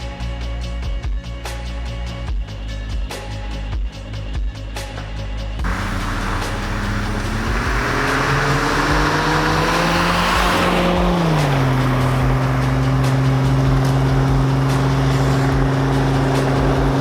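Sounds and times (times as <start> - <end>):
car engine accelerating: 5.6 - 17.0
road noise: 5.6 - 17.0.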